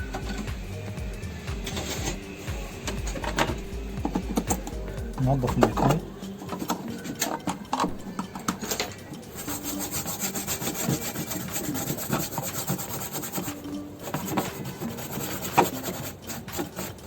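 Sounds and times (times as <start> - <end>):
brush scrubbing circuit board: 9.3 - 17.0.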